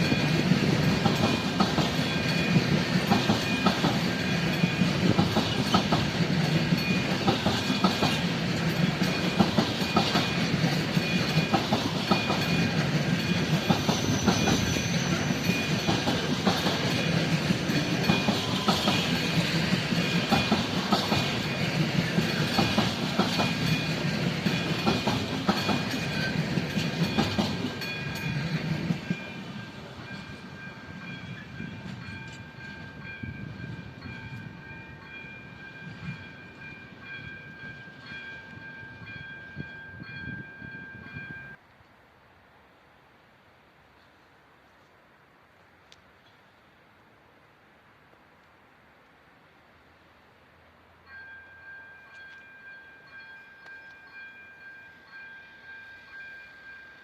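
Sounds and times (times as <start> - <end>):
wheels clacking over rail joints: 0.0 - 32.7
crossing warning bell ringing: 0.0 - 41.6, 51.0 - 57.0
freight train rumbling: 0.0 - 41.6.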